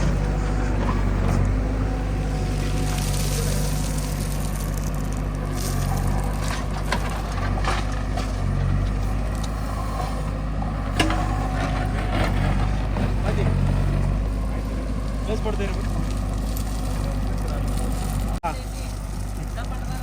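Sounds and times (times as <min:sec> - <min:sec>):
diesel engine running: 0:00.0 - 0:20.0
metal clanks and knocks: 0:10.8 - 0:14.1.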